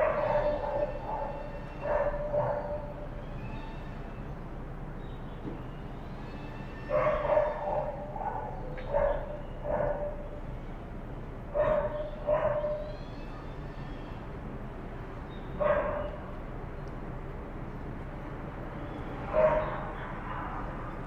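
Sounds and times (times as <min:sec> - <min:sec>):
dog barking: 0:00.0 - 0:03.0, 0:06.9 - 0:10.3, 0:11.5 - 0:12.9, 0:15.6 - 0:16.2, 0:19.3 - 0:20.6.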